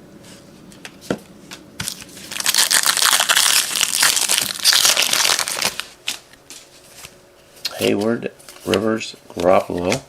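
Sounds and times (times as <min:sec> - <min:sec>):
plastic wrapper crinkling: 0:01.9 - 0:06.0.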